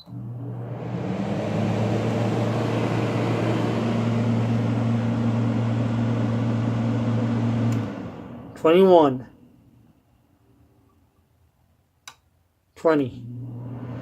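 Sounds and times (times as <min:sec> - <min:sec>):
air conditioner fan rush: 0:00.0 - 0:09.2
air conditioner compressor hum: 0:00.0 - 0:09.9.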